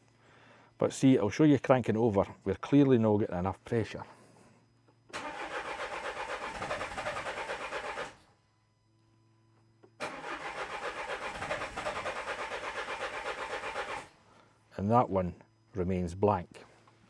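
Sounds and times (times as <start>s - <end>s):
diesel engine starter cranking: 5.1s - 8.2s, 9.9s - 14.1s.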